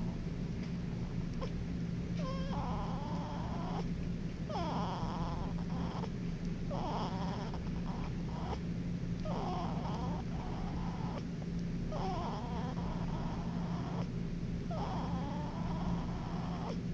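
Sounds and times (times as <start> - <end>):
child snoring with squeaky whistle: 2.2 - 3.9, 4.5 - 6.1, 6.7 - 8.6, 9.3 - 11.2, 11.9 - 14.1, 14.7 - 16.8.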